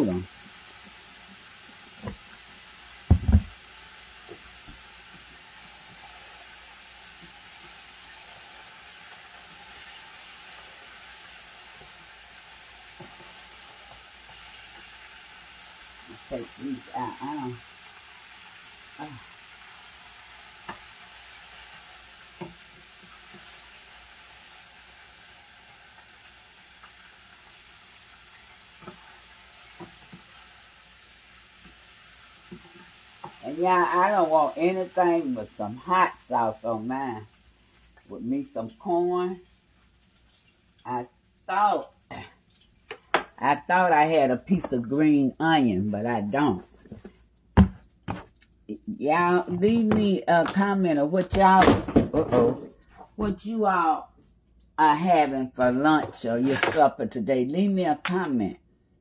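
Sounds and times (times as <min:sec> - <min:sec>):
chicken sizzling in hot oil: 0:00.0 - 0:43.4
loud low thumps: 0:03.1 - 0:03.6.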